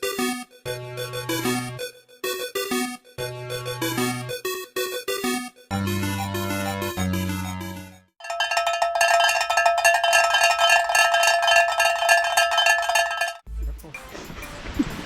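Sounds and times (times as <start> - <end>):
metallic bell ringing roll: 8.2 - 13.5.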